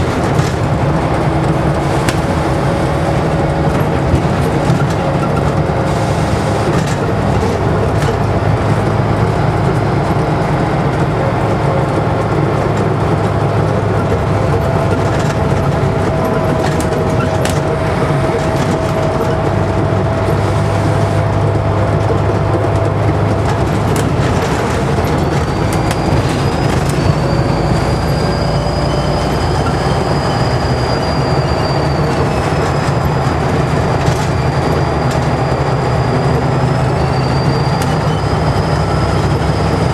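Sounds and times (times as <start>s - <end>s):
bus engine drone: 0.0s - 39.9s
high turbocharger whistle: 25.1s - 39.9s.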